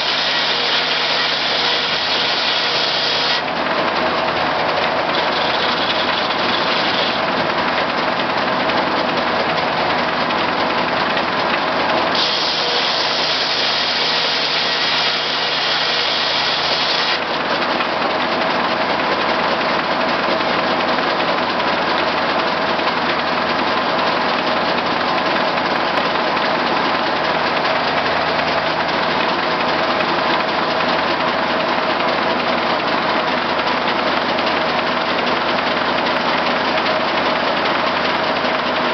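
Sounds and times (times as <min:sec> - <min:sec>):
engine running steadily: 0:00.0 - 0:38.9
circular saw high hiss: 0:12.2 - 0:17.2.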